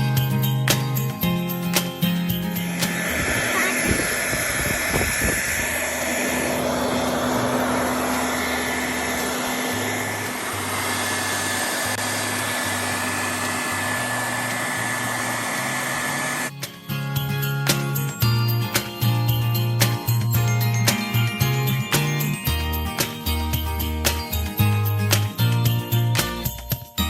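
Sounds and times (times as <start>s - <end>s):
background music with low bass: 0.0s - 27.0s
hair dryer blowing with whine: 1.7s - 16.5s.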